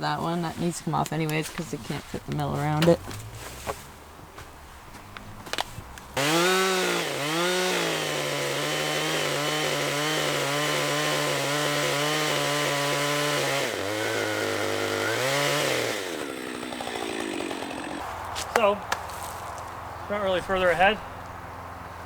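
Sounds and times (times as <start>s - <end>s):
chainsaw cutting log: 6.2s - 18.6s.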